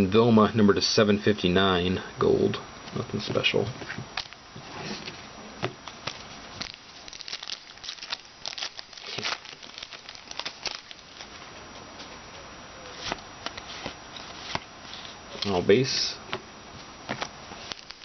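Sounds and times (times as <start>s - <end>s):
foil wrappers crinkling: 4.2s - 4.4s, 5.8s - 11.5s, 17.1s - 18.0s.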